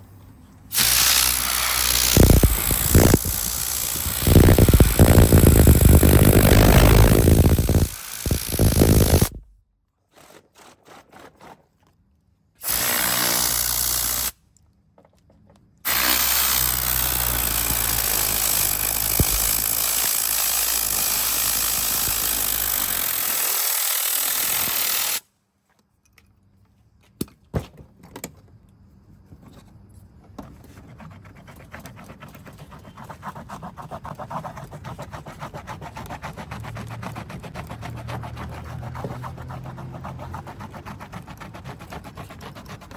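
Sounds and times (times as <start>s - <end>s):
motorised car-cleaning tool: 0.7s - 9.5s, 12.6s - 14.3s, 15.9s - 25.2s.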